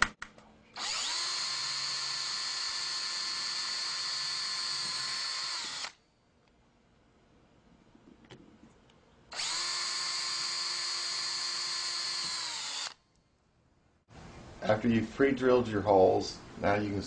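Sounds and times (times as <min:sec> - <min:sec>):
power drill drilling wood: 0:00.8 - 0:06.0, 0:09.3 - 0:13.0.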